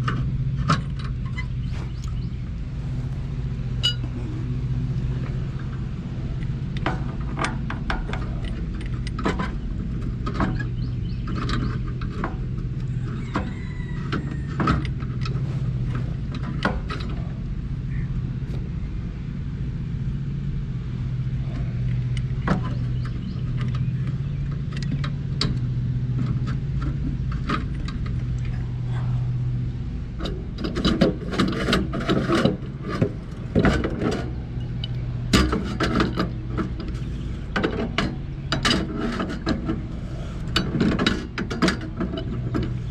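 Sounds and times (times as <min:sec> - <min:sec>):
steady low hum: 0:00.0 - 0:42.9
hand tools clinking on metal pipe: 0:03.8 - 0:04.1.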